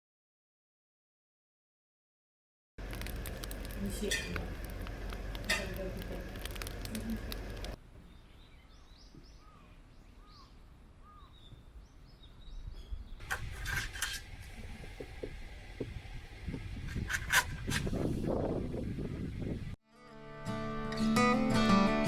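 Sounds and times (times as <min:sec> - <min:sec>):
birds chirping: 0:05.2 - 0:16.8, 0:17.6 - 0:19.8
rustling noise: 0:13.2 - 0:19.4.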